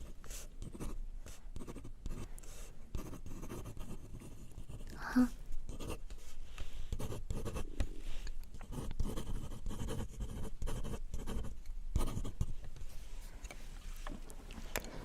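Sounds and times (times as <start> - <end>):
pen scratching on paper: 0.0 - 5.0, 5.7 - 6.3, 6.9 - 12.6.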